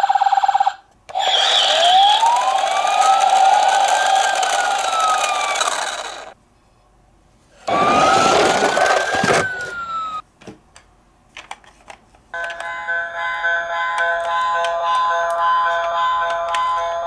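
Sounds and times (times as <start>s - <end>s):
police siren wail: 1.7s - 6.0s, 7.7s - 10.2s.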